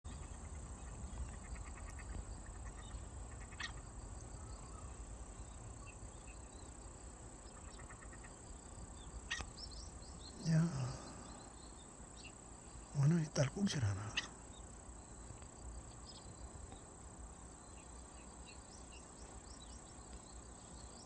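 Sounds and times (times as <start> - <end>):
duck hiccup-like calls: 13.1 - 14.4
rapid faint ticks: 14.1 - 20.8.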